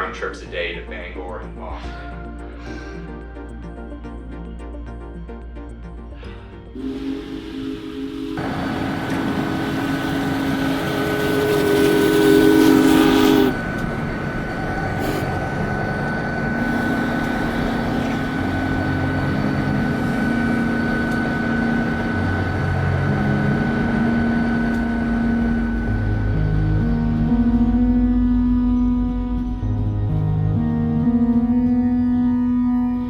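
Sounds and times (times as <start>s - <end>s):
train rumbling on rails: 6.3s - 27.7s
train horn: 6.8s - 28.9s.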